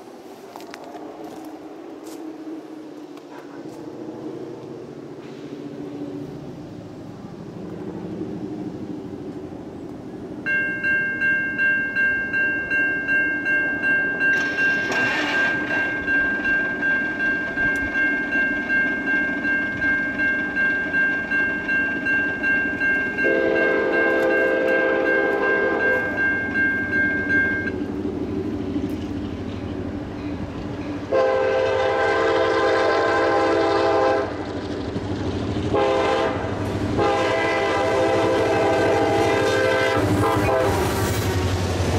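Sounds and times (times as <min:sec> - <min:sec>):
freight train rumble: 0:00.0 - 0:41.9
crossing warning bell ringing: 0:10.4 - 0:34.1
locomotive air horn blasts: 0:23.2 - 0:26.1, 0:31.1 - 0:34.4, 0:35.7 - 0:41.0.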